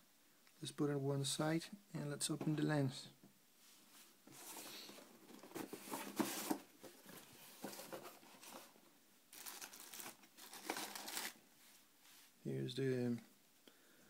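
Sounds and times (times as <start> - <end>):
cardboard and wrapping rustling: 3.9 - 11.4.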